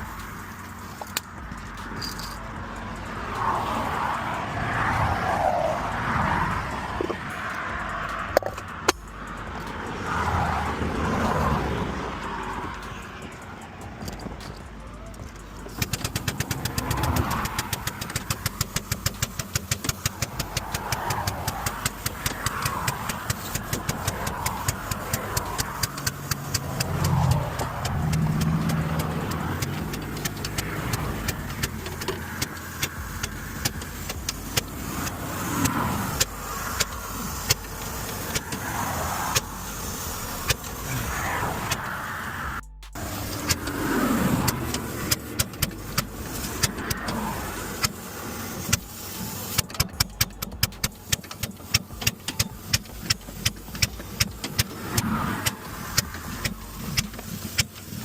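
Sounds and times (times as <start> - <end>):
engine knocking rapidly: 0.0 - 41.3, 42.6 - 58.0
highway traffic passing: 0.0 - 58.0
low hum: 33.0 - 45.2.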